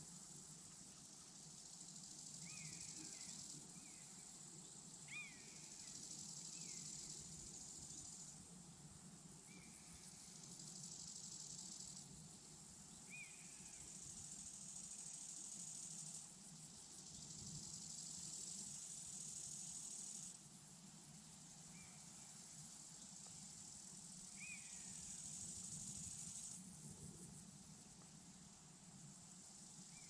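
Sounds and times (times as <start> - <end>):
faint crickets trilling: 0.0 - 30.0.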